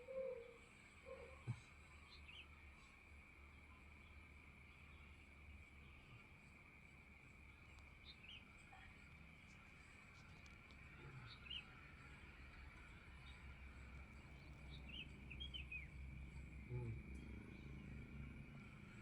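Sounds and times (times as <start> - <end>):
bird chirps: 10.2 - 18.2.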